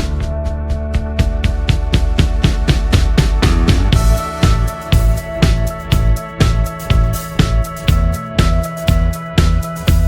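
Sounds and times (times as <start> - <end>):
drum fill: 0.0 - 7.9
background music with drum beat: 0.0 - 10.0.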